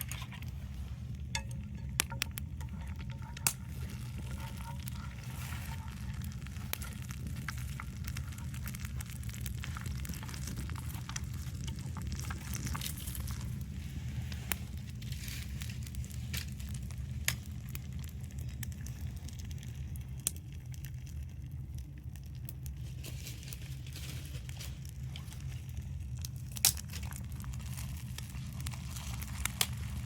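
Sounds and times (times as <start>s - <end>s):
low rumble: 0.0s - 22.8s
bonfire crackling and popping: 0.0s - 30.0s.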